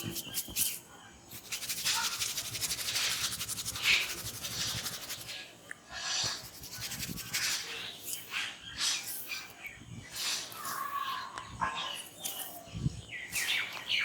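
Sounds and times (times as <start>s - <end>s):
hands rubbing hair and skin: 0.0s - 5.4s, 6.2s - 8.3s.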